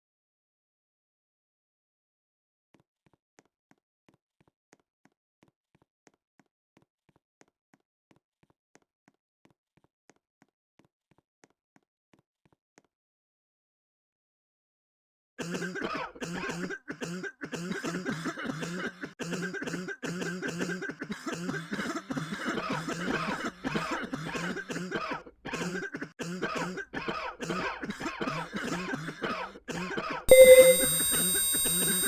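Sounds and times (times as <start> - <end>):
person coughing rapidly: 15.4 - 30.2
loud steady electronic tone: 30.3 - 32.0.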